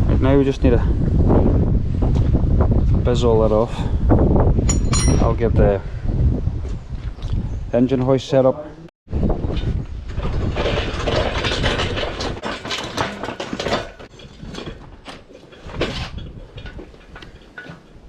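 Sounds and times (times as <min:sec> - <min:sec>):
low rumble of wheels: 0:09.1 - 0:18.0
engine hoist clanking and rattling: 0:09.5 - 0:18.0.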